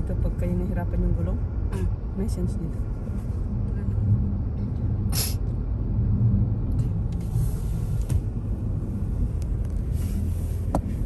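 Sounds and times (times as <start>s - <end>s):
car driving on snowy road: 0.0s - 11.0s
brief hiss: 5.1s - 5.4s.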